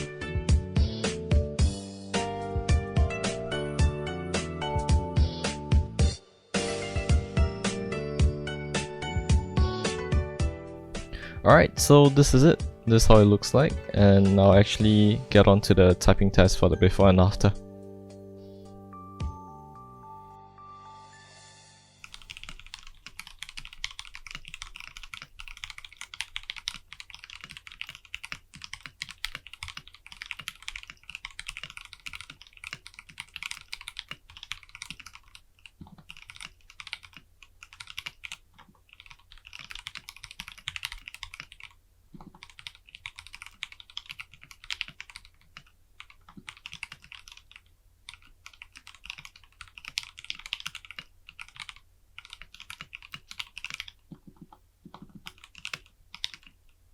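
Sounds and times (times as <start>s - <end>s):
mechanical keyboard typing: 22.0s - 56.6s.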